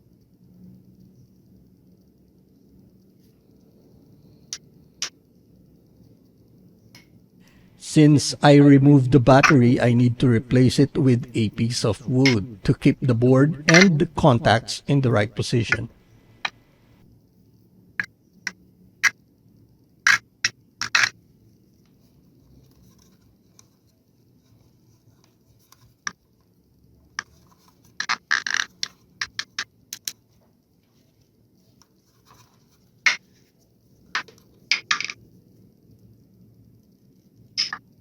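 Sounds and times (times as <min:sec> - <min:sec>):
plastic clicks and knocks: 0:34.2 - 0:35.2.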